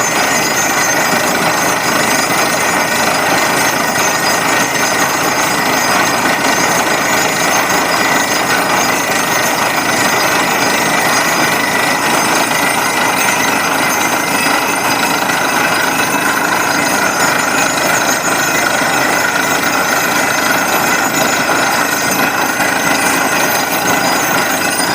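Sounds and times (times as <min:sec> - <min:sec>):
drilling rig hammering: 0:00.0 - 0:24.9.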